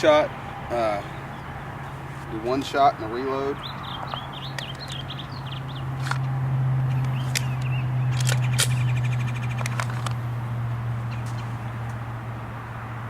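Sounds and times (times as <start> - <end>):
birds chirping: 0.0 - 12.4
sharp clicks and cracks: 9.4 - 10.2.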